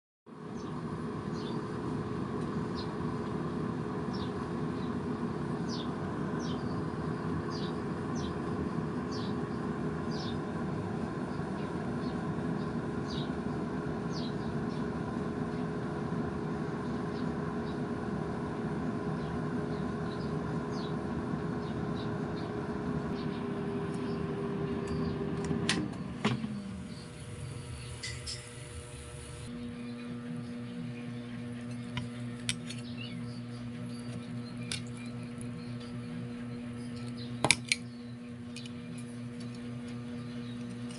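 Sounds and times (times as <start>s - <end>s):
air fryer fan humming: 0.3s - 40.9s
air fryer click: 24.8s - 26.8s.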